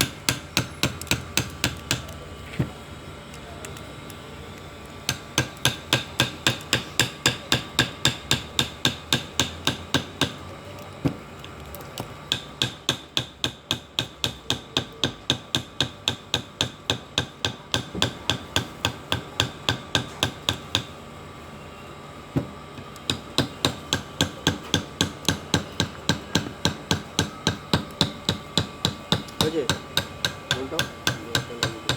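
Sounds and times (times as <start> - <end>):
rapid hammer strikes: 0.0 - 2.1, 5.1 - 10.4, 12.3 - 20.9, 23.1 - 31.9.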